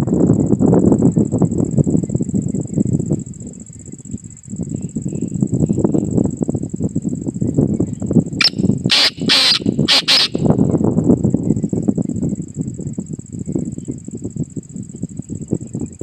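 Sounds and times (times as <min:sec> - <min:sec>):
bird harsh rasping call: 0:08.4 - 0:10.5.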